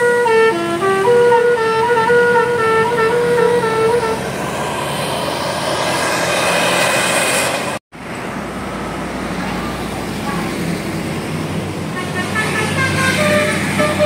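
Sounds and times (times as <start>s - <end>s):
musical bus horn tune: 0.0s - 4.4s, 11.9s - 14.0s
bus going by: 0.0s - 14.0s.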